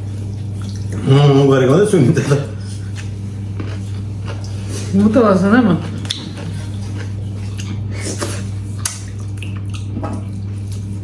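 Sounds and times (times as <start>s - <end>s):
wet mouth sounds: 5.9s - 11.0s.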